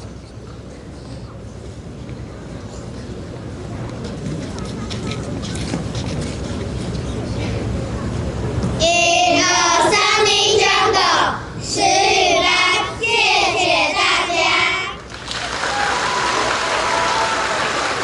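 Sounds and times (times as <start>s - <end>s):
applause: 15.0s - 18.0s.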